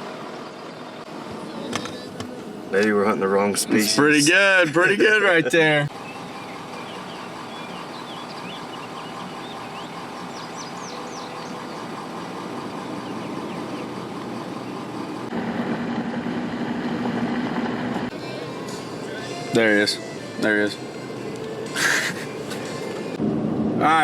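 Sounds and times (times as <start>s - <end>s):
small birds chirping: 5.9s - 15.1s.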